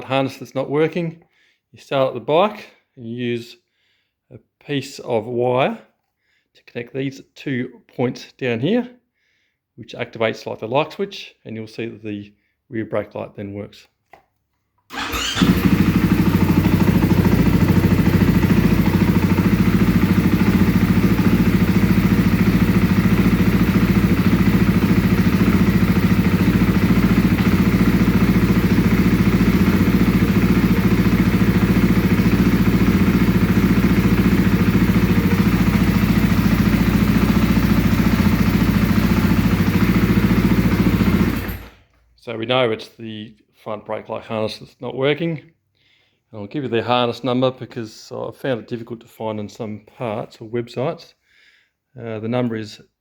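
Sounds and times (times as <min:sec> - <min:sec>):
motorcycle engine idling: 0:14.9 - 0:41.8.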